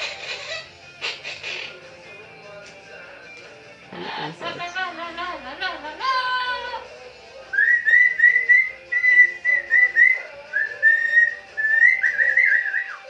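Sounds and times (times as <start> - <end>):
parrot whistling clear notes: 7.5 - 13.0.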